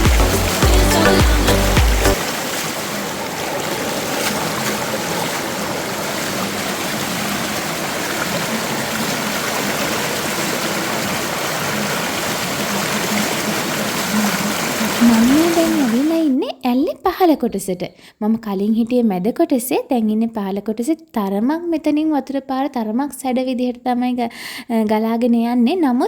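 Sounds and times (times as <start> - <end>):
stream rushing over rocks: 0.0 - 16.2.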